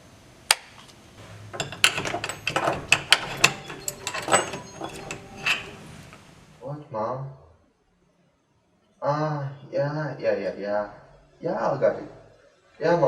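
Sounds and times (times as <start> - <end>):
irregular clicks and knocks: 1.4 - 6.3.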